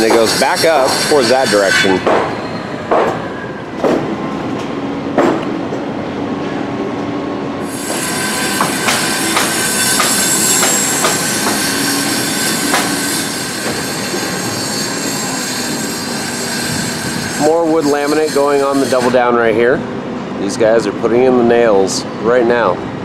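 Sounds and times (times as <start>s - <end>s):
high hiss and squeal: 0.0s - 3.6s, 7.6s - 19.7s.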